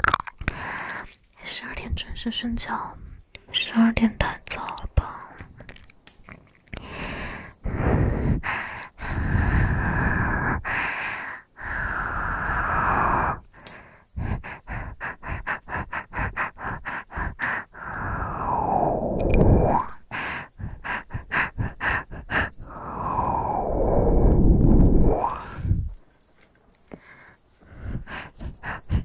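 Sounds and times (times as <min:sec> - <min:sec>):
person breathing heavily: 0:00.5 - 0:01.2, 0:06.8 - 0:26.0, 0:26.9 - 0:29.0
person panting: 0:06.8 - 0:25.9, 0:26.9 - 0:29.0.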